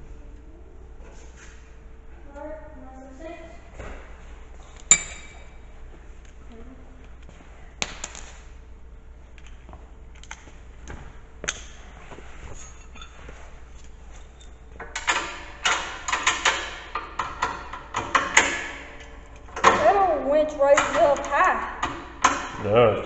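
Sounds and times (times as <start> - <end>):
tools clinking on metal: 4.9 - 5.5
ringing metal clanks: 4.9 - 5.6.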